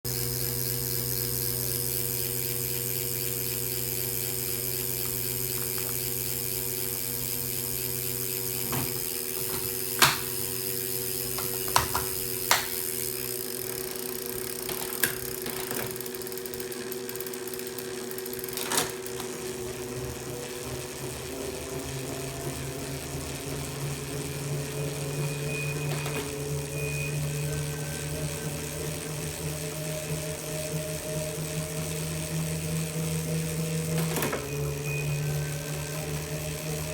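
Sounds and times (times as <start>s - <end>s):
bike trainer electric hum: 0.0s - 36.9s
sharp clicks: 11.3s - 13.0s.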